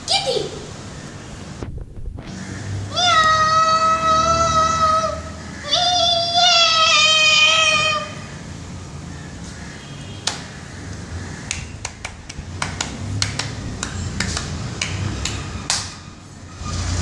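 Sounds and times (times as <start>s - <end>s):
sharp clicks and taps: 10.2s - 15.9s.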